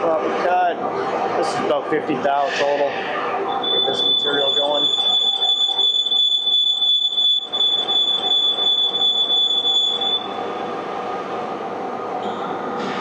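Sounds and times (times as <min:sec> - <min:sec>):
high-pitched tool chatter squeal: 0:03.5 - 0:10.4.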